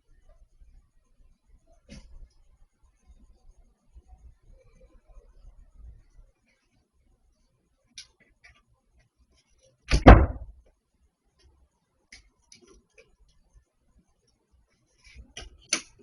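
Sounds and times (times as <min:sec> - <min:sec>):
loud bang: 0:09.9 - 0:10.5.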